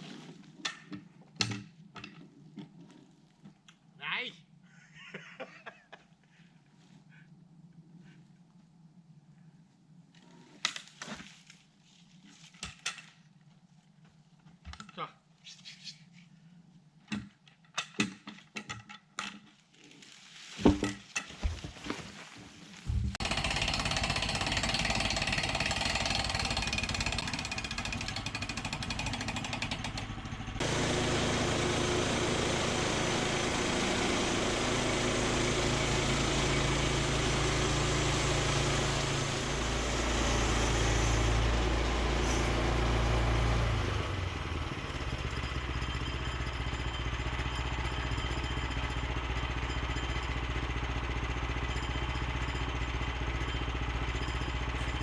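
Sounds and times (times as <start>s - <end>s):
small petrol engine running: 23.0s - 55.0s.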